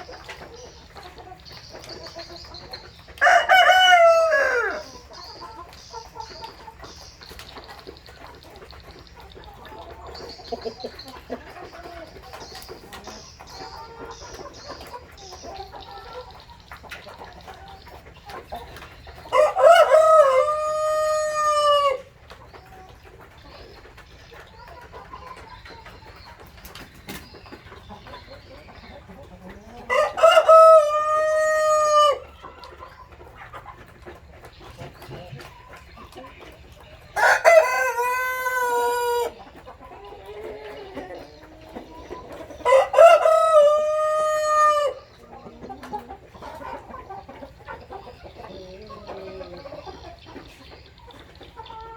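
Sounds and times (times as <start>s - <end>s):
hens clucking softly: 0.0s - 51.9s
rooster crowing: 3.2s - 4.9s, 19.3s - 22.0s, 37.2s - 39.3s, 42.7s - 45.0s.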